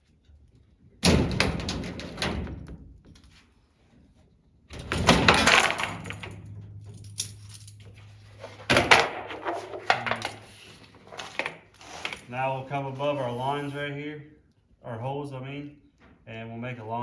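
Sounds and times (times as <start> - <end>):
parts clattering and rattling: 4.7 - 13.5.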